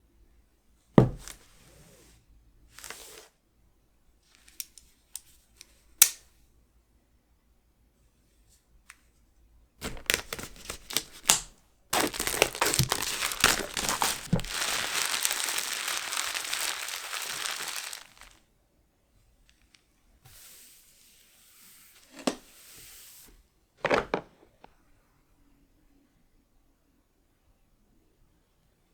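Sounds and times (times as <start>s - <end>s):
packaging crinkling and tearing: 9.8s - 18.4s
soft rustling: 12.0s - 18.4s.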